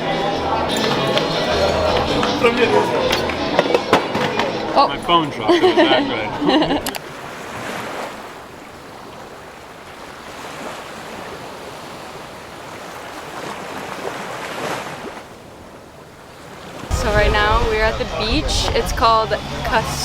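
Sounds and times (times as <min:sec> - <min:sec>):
waves on a pebble beach: 0:07.0 - 0:17.8.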